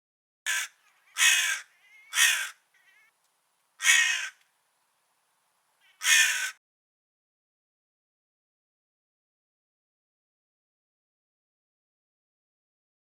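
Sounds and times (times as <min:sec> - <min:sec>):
crow cawing: 0:00.5 - 0:03.1, 0:03.8 - 0:04.4, 0:05.8 - 0:06.6.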